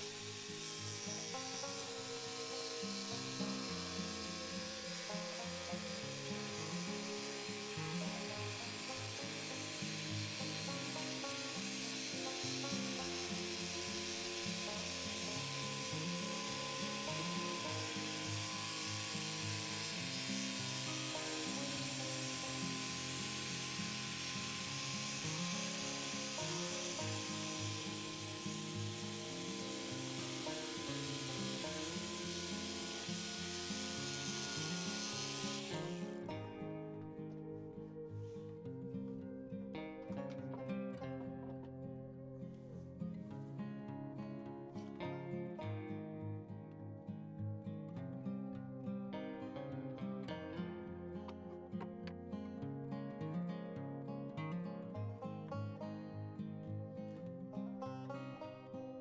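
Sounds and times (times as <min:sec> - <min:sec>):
steady hiss: 0:00.0 - 0:36.2
background music: 0:00.0 - 0:53.2.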